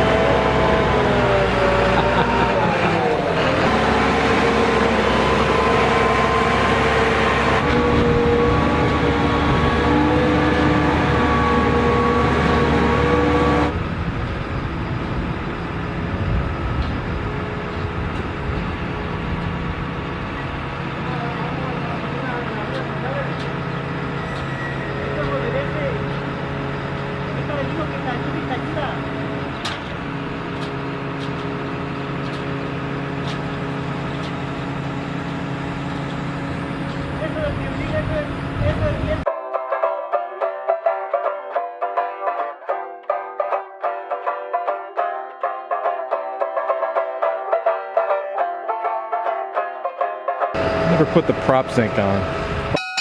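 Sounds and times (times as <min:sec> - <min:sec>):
engine running: 0:00.0 - 0:39.3, 0:50.6 - 0:53.0.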